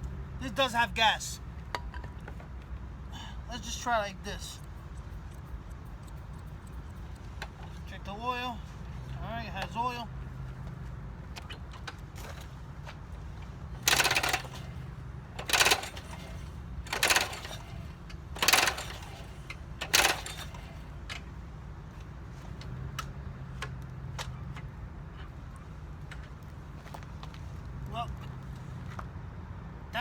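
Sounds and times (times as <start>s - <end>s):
engine turning over: 11.4s - 21.4s
lawn mower starter cord pulls: 11.4s - 21.4s.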